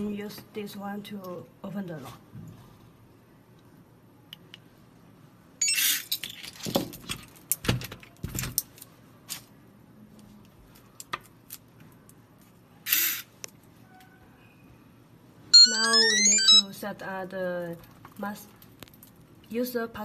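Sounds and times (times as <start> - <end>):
high beeps: 5.6 - 5.8, 15.6 - 16.6.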